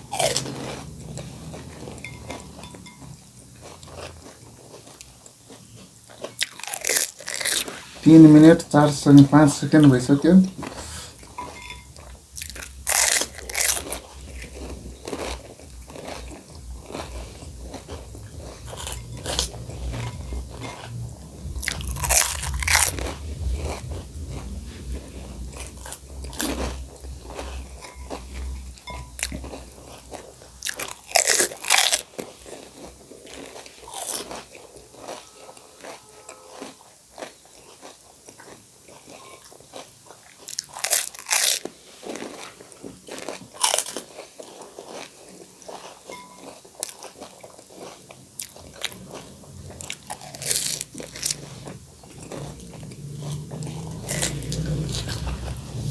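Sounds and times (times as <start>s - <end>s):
crisp shells crunching: 0.0s - 2.3s, 3.6s - 21.0s, 21.6s - 23.5s, 25.4s - 38.1s, 39.1s - 46.0s, 46.6s - 55.4s
chewing: 0.0s - 55.9s
low hum: 8.0s - 30.7s, 48.6s - 55.9s.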